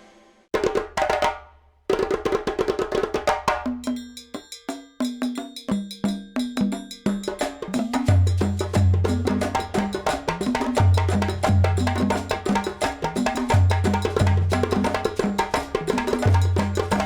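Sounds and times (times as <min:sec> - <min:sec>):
percussion-led background music: 0:00.0 - 0:17.0.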